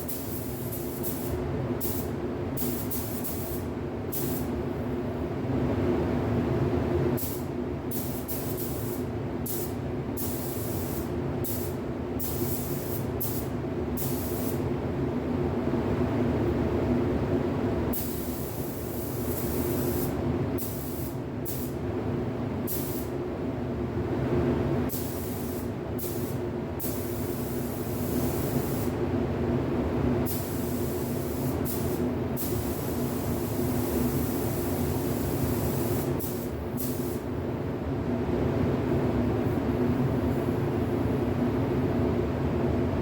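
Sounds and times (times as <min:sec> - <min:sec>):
low machine hum: 0:00.0 - 0:43.0
paint spray gun hissing: 0:00.1 - 0:04.5, 0:07.2 - 0:14.6, 0:17.9 - 0:21.7, 0:24.9 - 0:28.9, 0:30.3 - 0:37.2.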